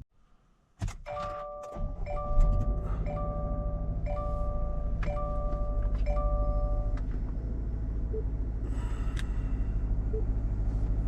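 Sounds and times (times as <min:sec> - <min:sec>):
car warning chime dinging: 0:01.1 - 0:07.0
car engine idling: 0:01.7 - 0:11.0.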